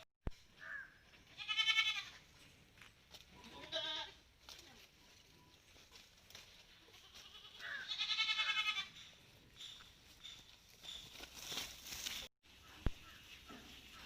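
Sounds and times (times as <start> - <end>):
goat bleating: 0.7 - 2.3, 3.4 - 4.2, 6.8 - 9.0.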